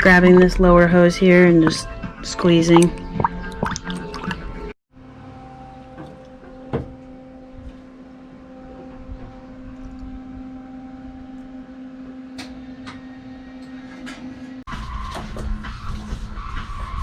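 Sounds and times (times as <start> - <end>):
low electrical hum: 5.0 - 14.4.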